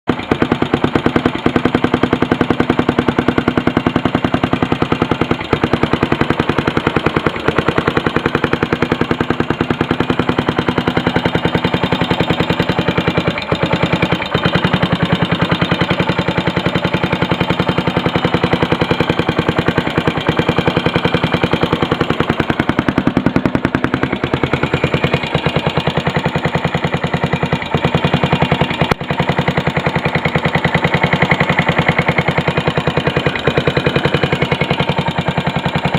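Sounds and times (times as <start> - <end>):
motorcycle engine knocking: 0.1 - 35.9.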